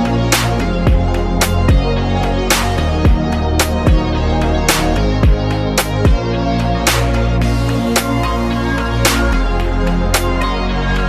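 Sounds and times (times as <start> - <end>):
deep bass notes: 0.0 - 11.0
booming kick drums: 0.9 - 1.1, 5.2 - 5.5.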